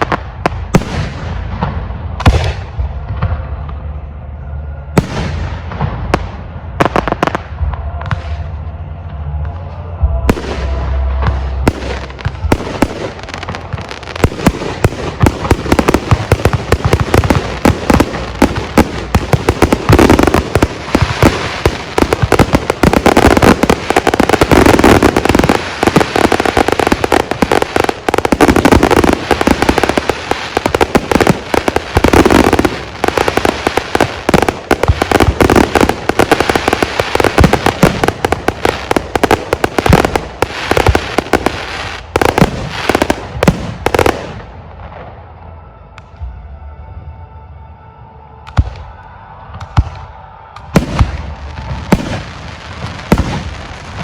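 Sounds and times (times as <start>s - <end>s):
fireworks bursts and bangs: 0.0s - 3.9s, 10.2s - 44.8s, 50.7s - 54.0s.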